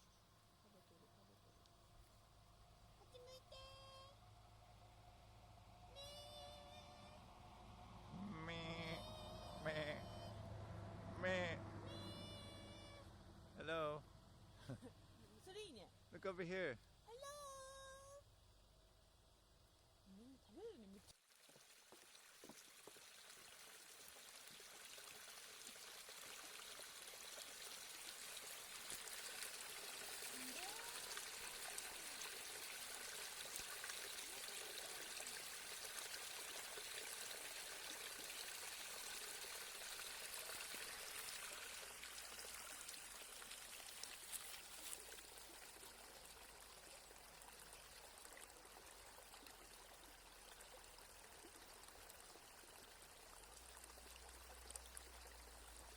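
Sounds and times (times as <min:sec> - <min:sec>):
flowing water: 0:21.1 - 0:55.9.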